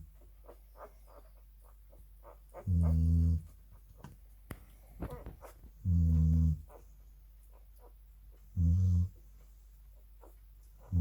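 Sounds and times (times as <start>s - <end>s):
dog snoring: 2.6s - 3.5s, 5.8s - 6.7s, 8.6s - 9.2s.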